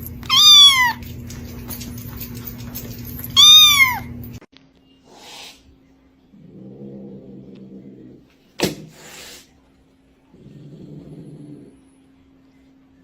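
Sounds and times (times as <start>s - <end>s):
cat meowing: 0.3s - 1.0s, 3.4s - 4.2s.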